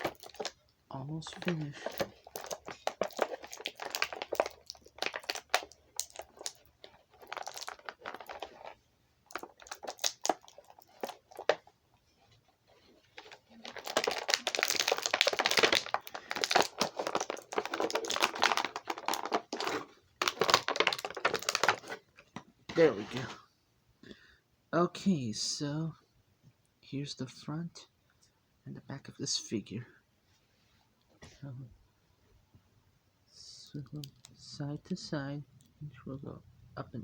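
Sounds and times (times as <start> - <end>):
plastic packaging crinkling: 0.0 - 0.6, 1.2 - 11.7, 12.6 - 23.3
clicks and crackles: 0.0 - 11.7, 12.7 - 22.5, 33.6 - 34.5.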